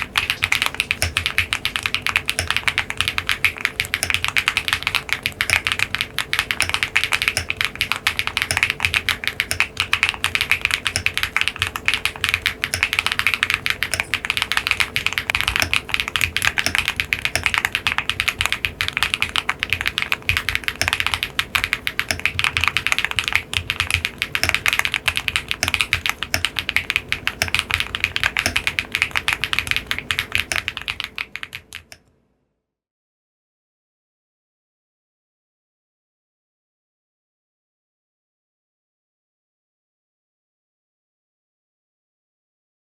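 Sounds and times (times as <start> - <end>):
fast typing on mechanical keyboard: 0.0 - 32.0.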